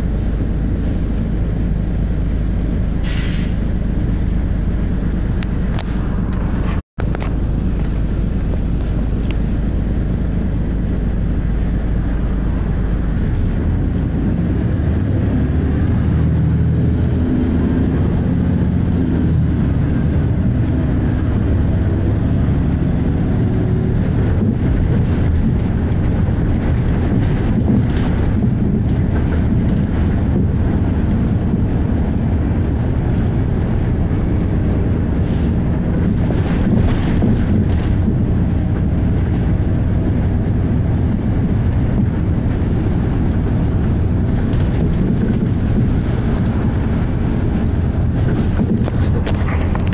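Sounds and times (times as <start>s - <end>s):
bus diesel engine droning: 0.0s - 49.9s
rattles and knocks: 24.3s - 31.7s, 35.9s - 40.0s, 44.2s - 49.9s.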